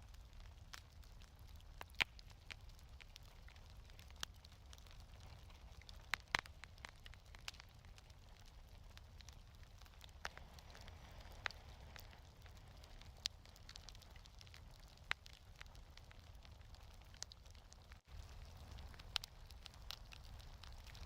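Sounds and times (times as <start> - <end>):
wood fire crackling: 0.0 - 21.0
sharp pops of fire: 0.7 - 7.7.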